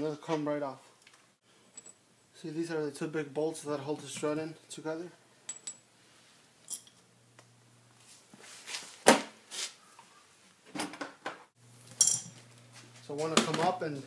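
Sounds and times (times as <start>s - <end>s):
metal tools clinking: 6.6s - 7.0s, 11.9s - 12.4s.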